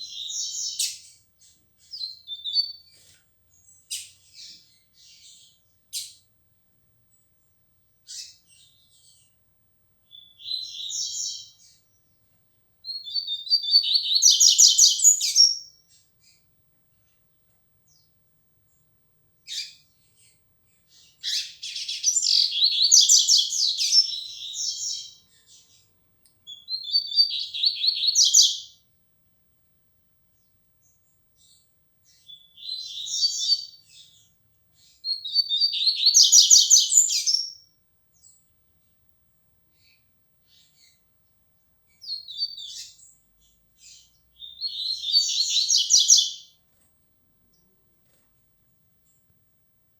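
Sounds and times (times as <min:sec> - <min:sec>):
bird singing warbling phrases: 0:10.1 - 0:11.8, 0:12.9 - 0:15.7, 0:20.9 - 0:25.8, 0:26.5 - 0:28.7, 0:32.3 - 0:34.2, 0:35.1 - 0:37.6, 0:42.0 - 0:43.2, 0:43.8 - 0:46.5.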